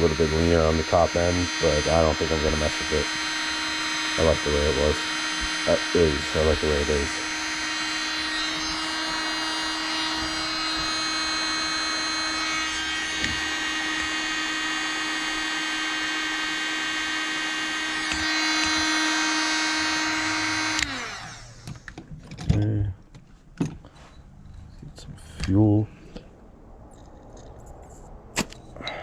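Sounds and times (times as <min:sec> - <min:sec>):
nitro engine buzzing whine: 0:00.0 - 0:22.1.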